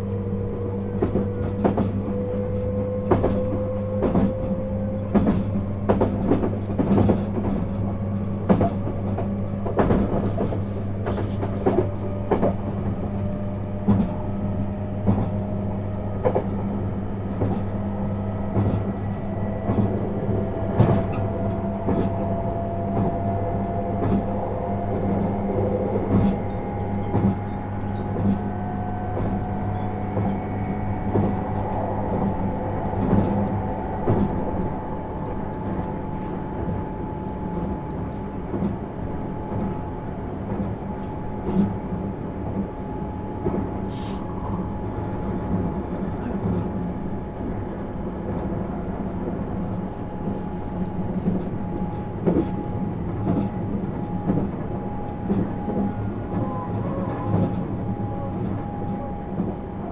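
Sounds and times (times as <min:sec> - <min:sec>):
train motor whine: 0:00.0 - 0:59.9
low hum: 0:17.1 - 0:38.0.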